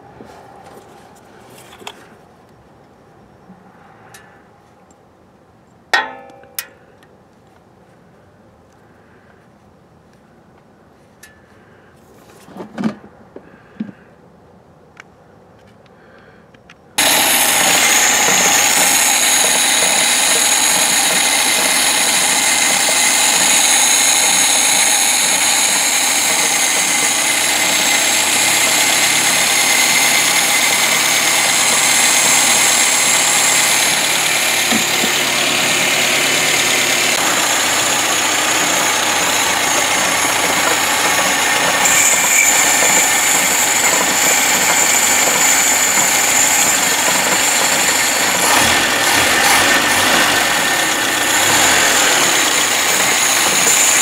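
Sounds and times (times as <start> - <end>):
vacuum cleaner motor running: 17.0 - 54.0.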